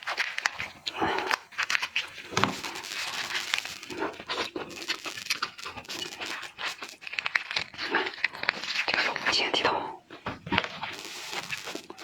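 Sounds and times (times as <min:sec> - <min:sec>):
wet chewing and sucking: 0:00.0 - 0:09.3
shrimp shells crackling: 0:00.0 - 0:09.5, 0:10.2 - 0:12.0.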